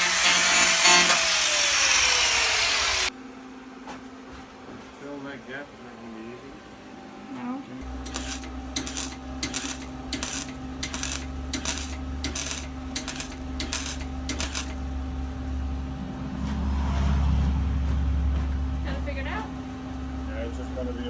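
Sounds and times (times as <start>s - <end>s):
welding arc crackling: 0.0s - 3.1s, 7.8s - 15.6s
steady electrical hum: 5.1s - 21.0s.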